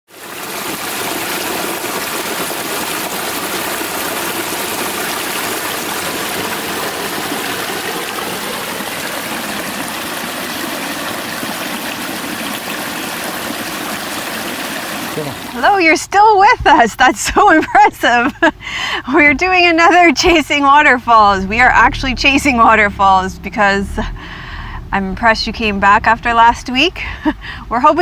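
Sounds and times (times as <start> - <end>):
stream water rushing: 0.1 - 16.0.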